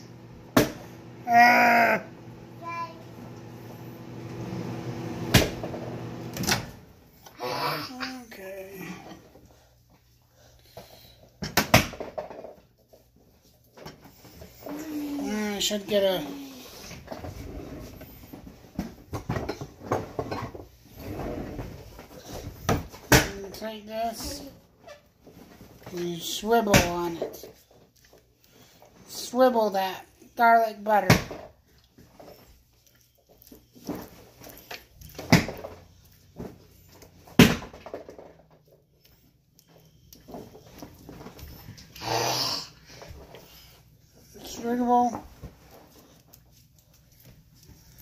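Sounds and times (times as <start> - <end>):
rustling and shuffling: 12.4 - 29.2, 31.5 - 42.0, 42.8 - 48.0.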